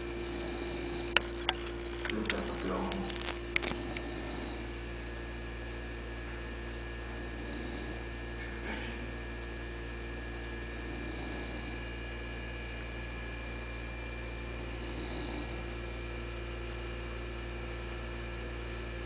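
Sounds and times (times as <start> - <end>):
dog snoring: 0.0 - 19.0
low hum: 0.0 - 19.0.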